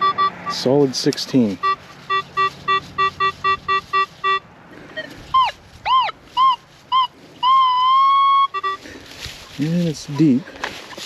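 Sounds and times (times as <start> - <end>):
metal detector beeps: 0.0 - 0.8, 1.6 - 4.4, 5.0 - 8.8
metal detector steady tone: 0.0 - 4.4, 5.0 - 8.8
metal detector chirps: 0.0 - 8.9.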